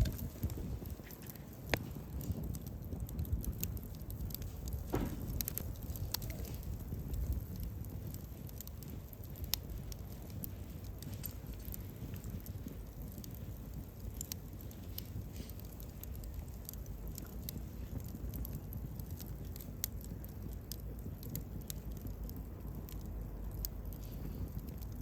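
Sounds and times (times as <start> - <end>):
campfire crackling and popping: 0.0 - 25.0
low rumble of burning: 0.0 - 25.0.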